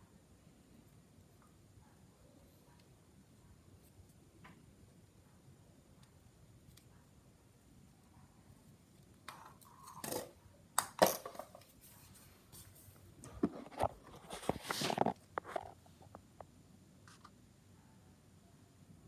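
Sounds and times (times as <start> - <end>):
hard parts knocking and clinking: 9.3 - 11.7
packaging rustling and scraping: 11.5 - 15.8.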